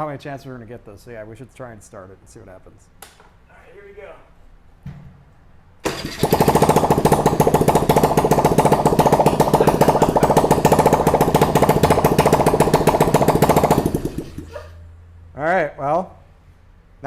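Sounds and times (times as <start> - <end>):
small engine running unmuffled: 5.8 - 14.8.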